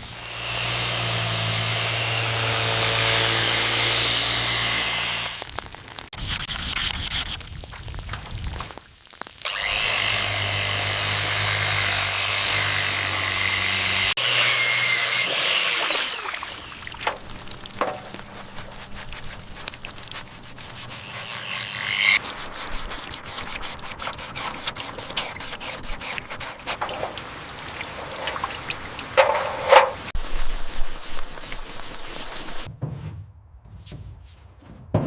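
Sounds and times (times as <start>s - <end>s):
power tool running: 0.0s - 5.4s, 9.5s - 17.0s
scraping: 16.6s - 30.6s.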